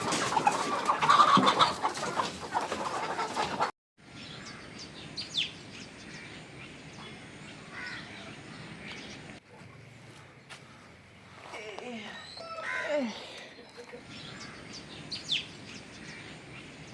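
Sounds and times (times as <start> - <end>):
chickens clucking: 0.0 - 3.7.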